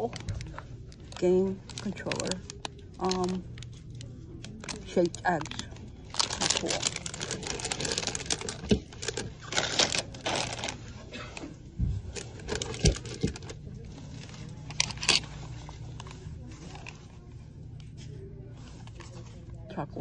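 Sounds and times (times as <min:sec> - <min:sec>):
plastic packaging rustling: 0:00.0 - 0:11.1, 0:12.1 - 0:17.3.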